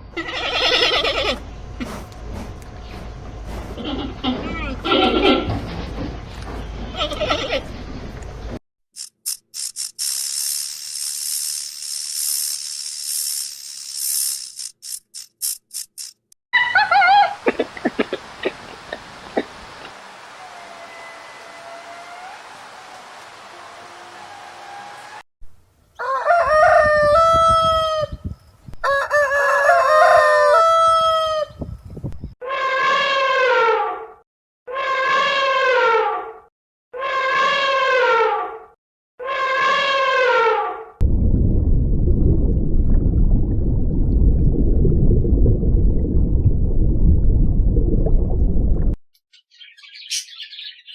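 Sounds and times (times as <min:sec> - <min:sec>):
animal hissing: 0:00.8 - 0:04.4
rooster crowing: 0:26.0 - 0:28.2, 0:28.8 - 0:31.6.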